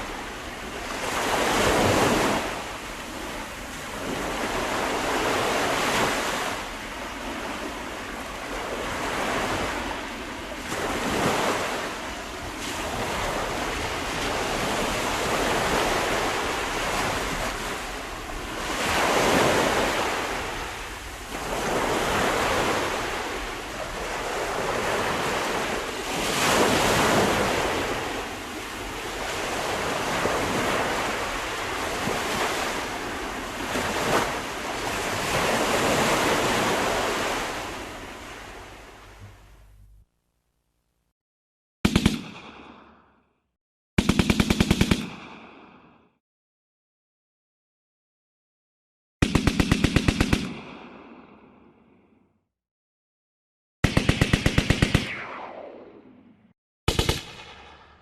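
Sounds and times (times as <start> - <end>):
ocean waves breaking on shore: 0.0 - 39.7.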